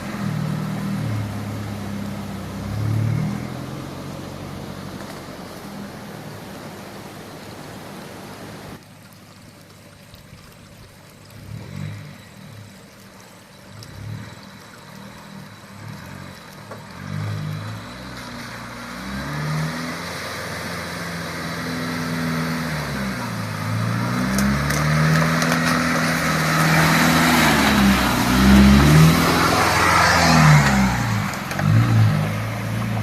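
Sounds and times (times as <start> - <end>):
diesel engine revving: 0.0 - 7.1, 13.7 - 33.0.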